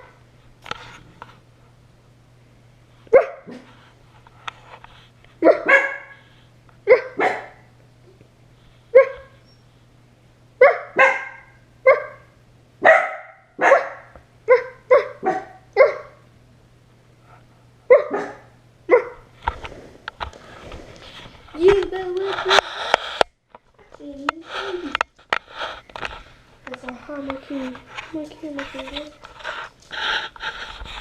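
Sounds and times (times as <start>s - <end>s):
dogs barking: 3.1s - 3.7s, 5.4s - 6.2s, 6.9s - 7.7s, 9.0s - 9.4s, 10.6s - 16.2s, 17.9s - 19.3s.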